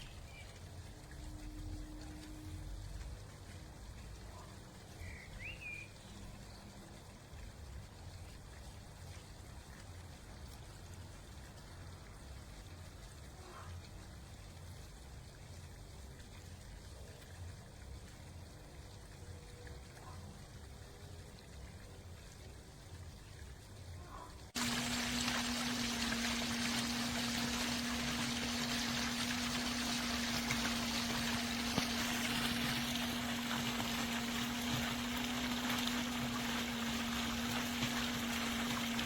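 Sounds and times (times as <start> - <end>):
fountain water splashing into pool: 0.0 - 39.0
rushing water: 0.0 - 39.0
low hum: 24.5 - 39.0.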